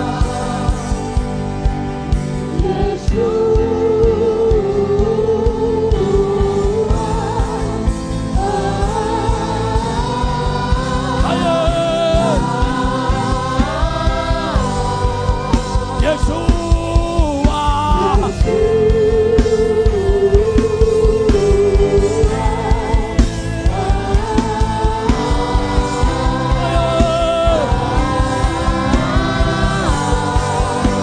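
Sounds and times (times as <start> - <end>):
steady drum beat: 0.0 - 31.0
person singing: 8.4 - 31.0.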